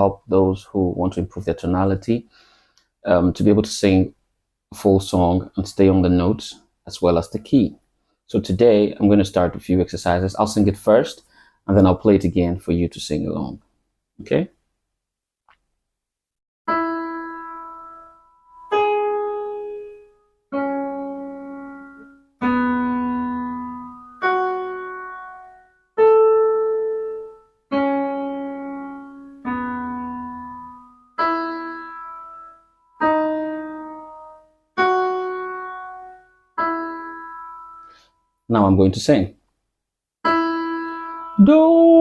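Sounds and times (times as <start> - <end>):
slow piano melody: 16.7 - 38.5, 40.2 - 42.0.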